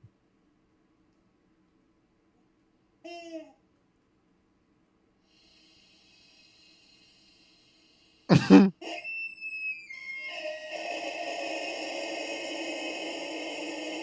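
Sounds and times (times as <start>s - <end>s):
loud cough: 8.3s - 8.8s
music: 8.8s - 14.0s.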